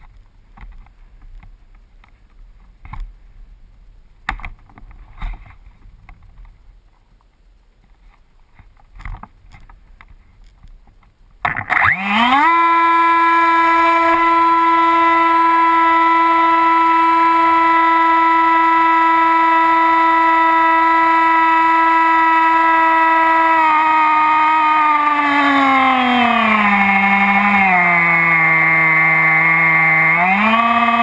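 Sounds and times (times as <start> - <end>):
electric motor propeller whine: 11.5 - 31.0.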